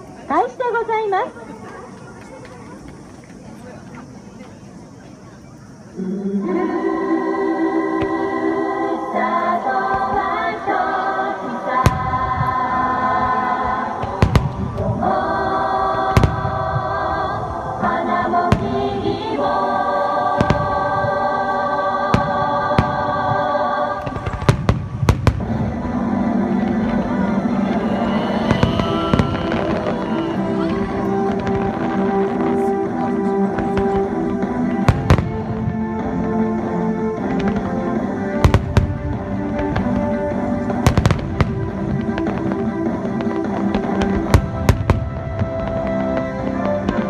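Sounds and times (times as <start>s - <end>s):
choral music: 5.8s - 47.0s
fireworks bursting: 6.5s - 47.0s
firework bang: 27.8s - 32.6s.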